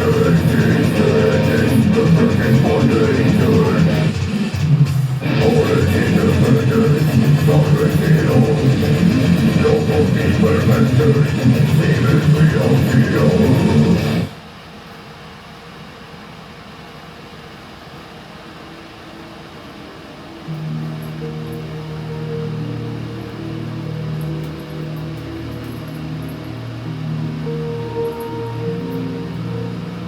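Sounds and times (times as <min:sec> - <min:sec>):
guitar background music: 0:00.0 - 0:14.3, 0:20.4 - 0:30.0.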